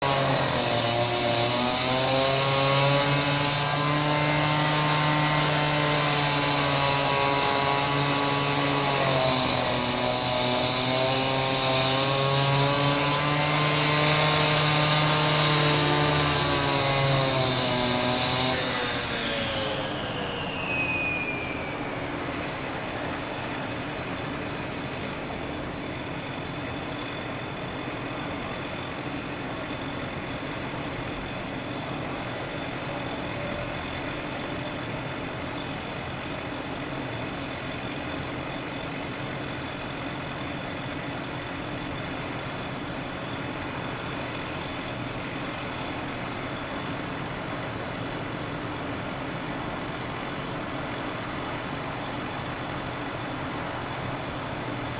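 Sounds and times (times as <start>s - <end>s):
falling whine of saw spinning down: 0.0s - 25.7s
steady engine drone: 18.6s - 54.9s.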